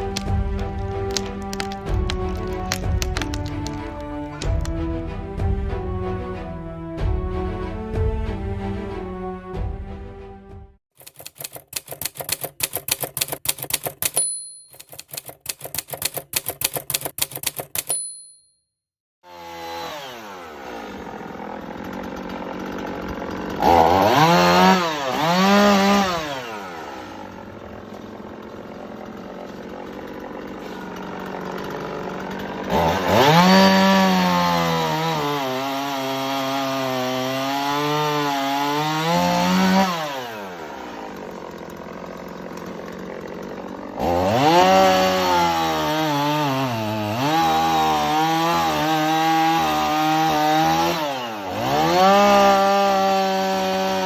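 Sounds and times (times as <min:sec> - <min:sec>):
chainsaw engine revving: 0:00.0 - 0:04.9, 0:19.2 - 0:54.0.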